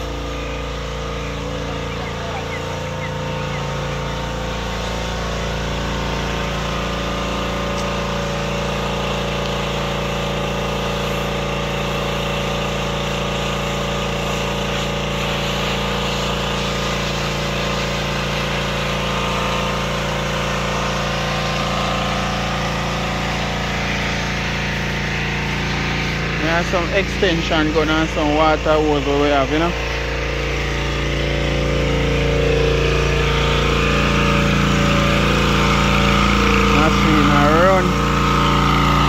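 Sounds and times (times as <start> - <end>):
pressure washer engine running: 0.0 - 39.0
hiss of spray: 10.7 - 12.2, 13.6 - 18.3.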